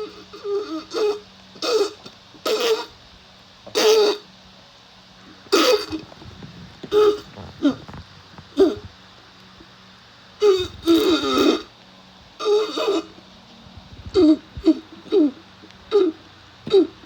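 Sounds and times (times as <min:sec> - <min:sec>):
person making harsh throat noises: 0:05.5 - 0:06.1, 0:06.8 - 0:08.9, 0:14.0 - 0:17.0.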